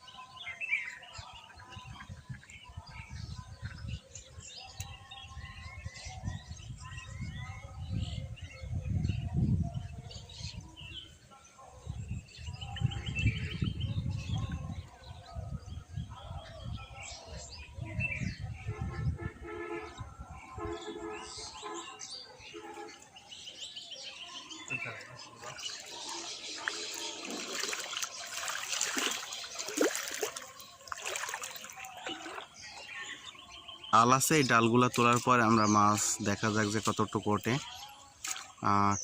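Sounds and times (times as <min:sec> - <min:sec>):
birds chirping and trilling: 0:00.0 - 0:39.0
water splashing and trickling: 0:24.4 - 0:39.0.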